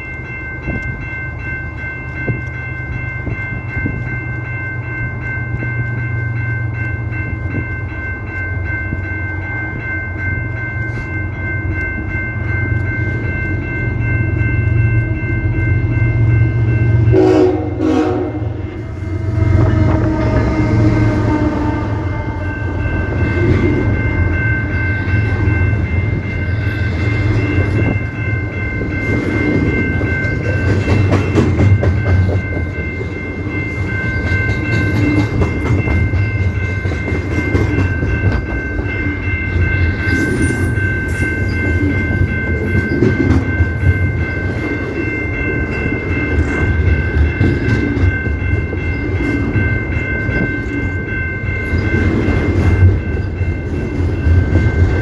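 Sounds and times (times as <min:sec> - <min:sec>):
train cars rumbling on rails: 0:00.0 - 0:55.0
train horn chord: 0:17.0 - 0:23.1.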